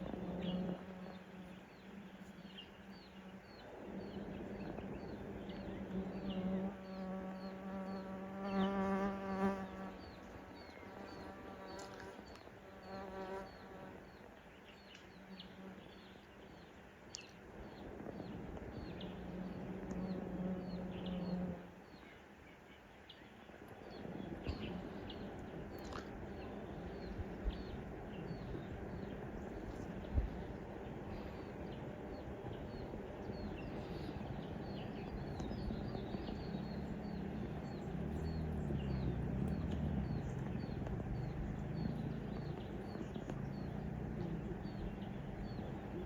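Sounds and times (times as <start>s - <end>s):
flying insect buzzing: 0.0s - 14.1s, 18.0s - 21.8s.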